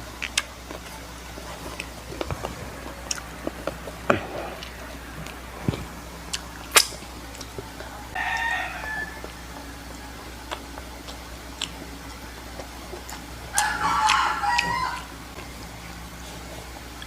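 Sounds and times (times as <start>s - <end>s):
rooster crowing: 8.1s - 10.3s, 13.5s - 15.4s.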